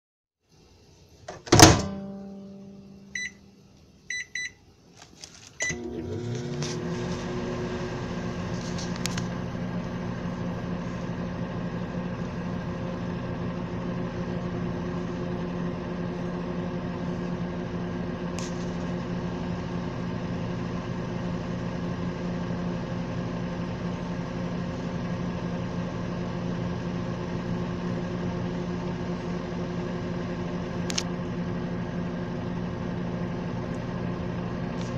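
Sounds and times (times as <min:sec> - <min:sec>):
microwave oven humming: 0:00.6 - 0:04.9, 0:05.5 - 0:34.9
microwave door clunk: 0:01.3 - 0:02.2
short keypad beeps: 0:04.1 - 0:04.6.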